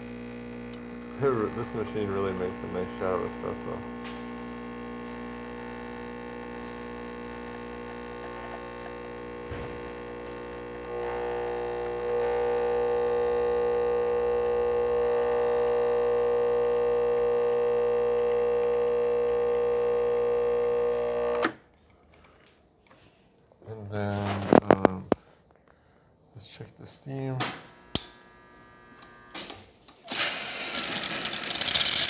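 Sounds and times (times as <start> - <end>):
espresso machine pump humming: 0.0 - 21.5, 27.8 - 29.5, 30.1 - 32.0.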